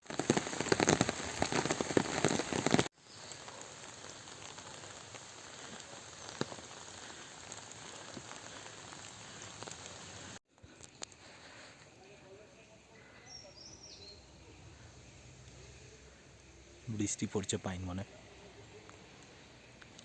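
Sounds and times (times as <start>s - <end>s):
heavy single raindrops: 0.0s - 10.4s
rain falling in forest: 0.0s - 20.0s.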